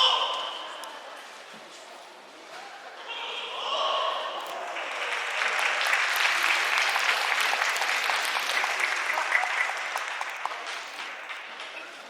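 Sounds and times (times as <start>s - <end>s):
audience applauding: 4.6s - 12.0s.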